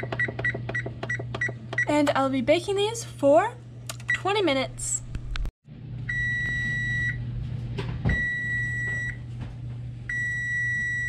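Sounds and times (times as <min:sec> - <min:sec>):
oven timer beeping: 0:00.0 - 0:02.1, 0:06.0 - 0:07.2, 0:08.1 - 0:09.2, 0:10.1 - 0:11.0.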